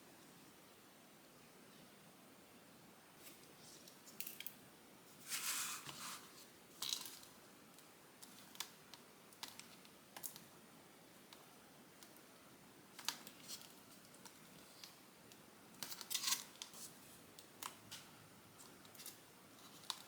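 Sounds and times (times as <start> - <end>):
rustling scrape: 5.1 - 6.5.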